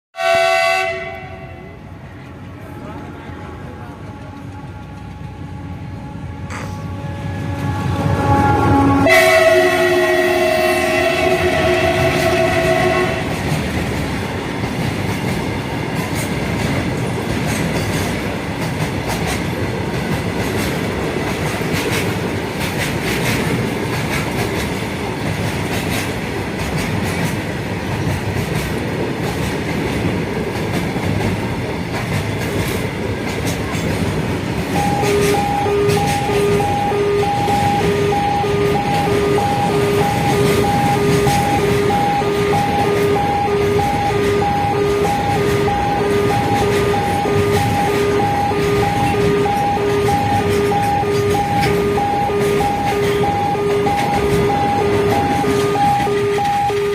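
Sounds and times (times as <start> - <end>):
train horn passing: 0.2 - 2.2, 3.4 - 13.7, 34.7 - 56.9
train rumbling: 0.2 - 56.9.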